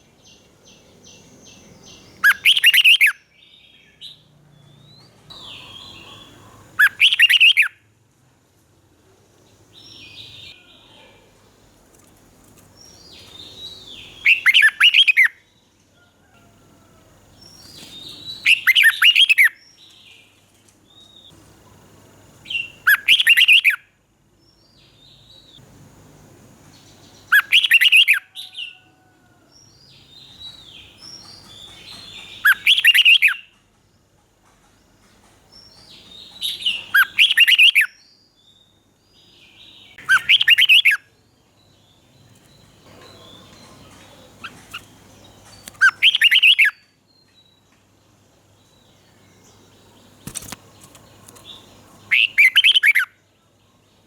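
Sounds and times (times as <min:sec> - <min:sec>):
bird singing song phrases: 0:00.0 - 0:07.8, 0:09.5 - 0:11.6, 0:12.7 - 0:15.8, 0:17.4 - 0:21.4, 0:22.4 - 0:25.6, 0:26.7 - 0:33.7, 0:35.5 - 0:54.0
soft bird chirps and calls: 0:00.0 - 0:07.8, 0:09.7 - 0:21.4, 0:22.4 - 0:23.9, 0:26.7 - 0:33.8, 0:34.4 - 0:54.0.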